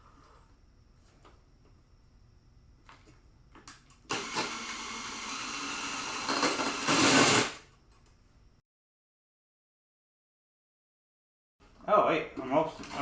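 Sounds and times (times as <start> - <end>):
electric drill boring: 4.1 - 7.6.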